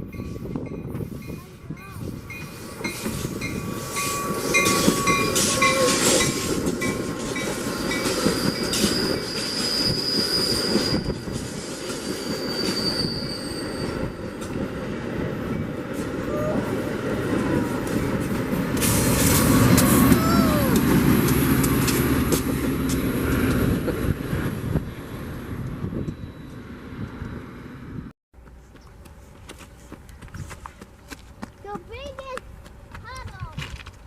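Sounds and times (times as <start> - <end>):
train cars rumbling on rails: 0.0 - 28.1
high-pitched wheel squeal: 3.3 - 6.6, 8.1 - 11.4, 12.0 - 14.4.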